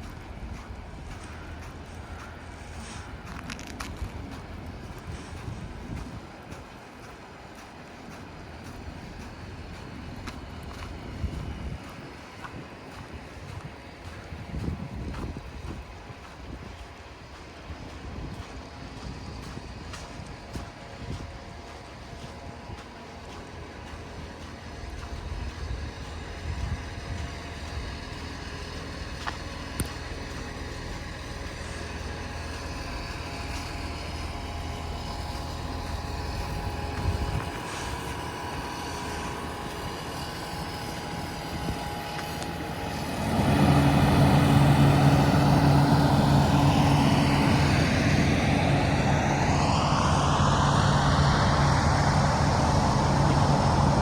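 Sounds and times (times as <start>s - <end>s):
heavy vehicle engine drone: 0.0s - 54.0s
vehicle passing on snowy road: 0.0s - 54.0s.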